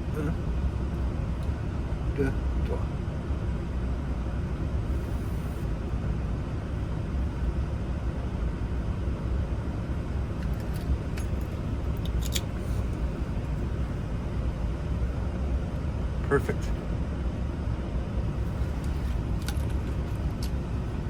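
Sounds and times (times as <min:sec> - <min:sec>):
low background rumble: 0:00.0 - 0:21.0
small metallic clicks: 0:10.4 - 0:12.5.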